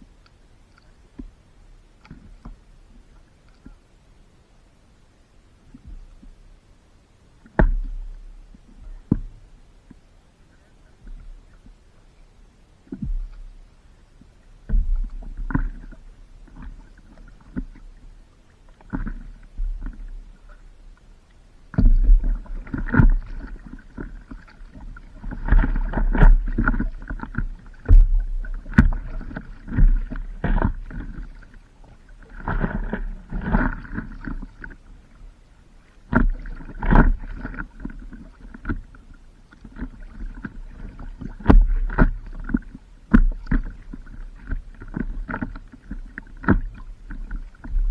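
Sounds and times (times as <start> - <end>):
water splashing and sloshing: 14.7 - 47.9
low microphone rumble: 25.2 - 30.9.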